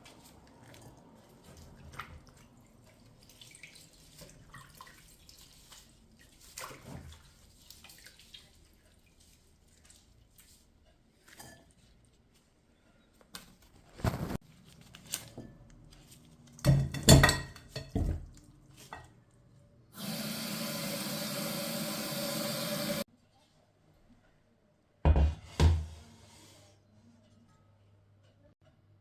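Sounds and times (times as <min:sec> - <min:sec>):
pots and dishes clattering: 0:16.6 - 0:19.1
water tap running: 0:20.0 - 0:23.0.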